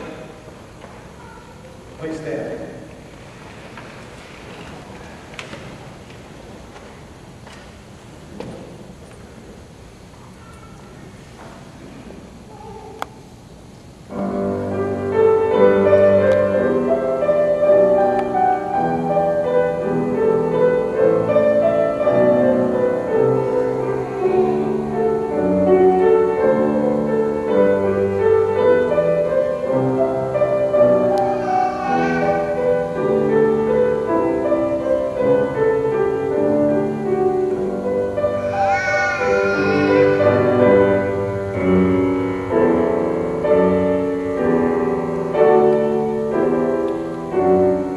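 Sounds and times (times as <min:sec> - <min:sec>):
slow classical piano piece: 0:14.0 - 0:47.9.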